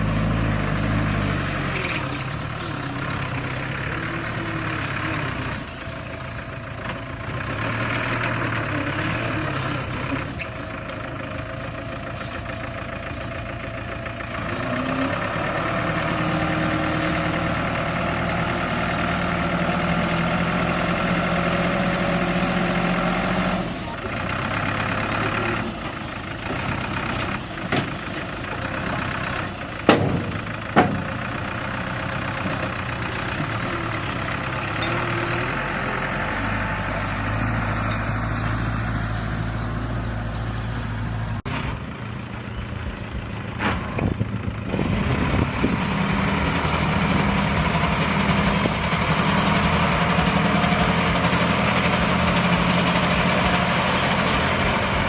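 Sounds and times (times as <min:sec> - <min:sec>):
heavy diesel engines running: 0:00.0 - 0:55.0
sharp knocks: 0:29.9 - 0:31.4.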